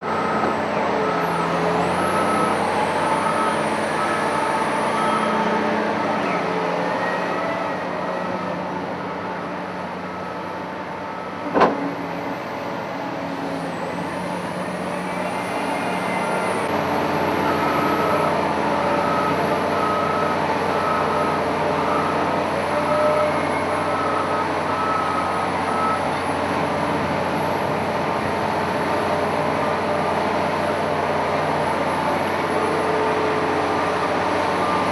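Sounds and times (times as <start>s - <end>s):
reversing alarm beeping: 0.0s - 11.5s, 17.3s - 26.4s, 32.5s - 34.9s
diesel engine running: 0.0s - 34.9s.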